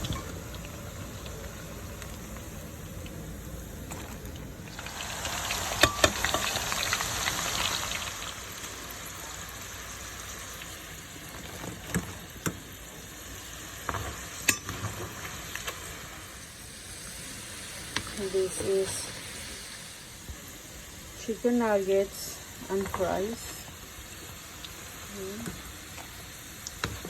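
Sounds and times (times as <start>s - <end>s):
food sizzling in hot oil: 0.0s - 27.0s.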